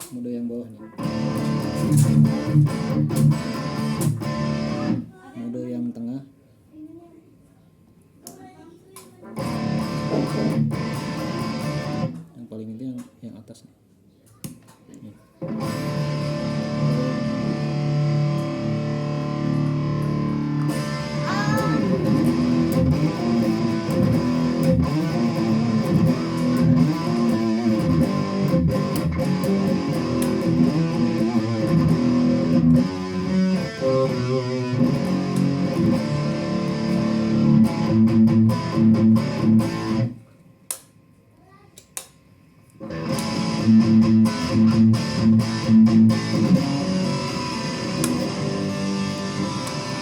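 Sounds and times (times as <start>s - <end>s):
distorted electric guitar riffs: 0.8s - 5.1s, 9.3s - 12.2s, 15.4s - 40.2s, 42.8s - 50.0s.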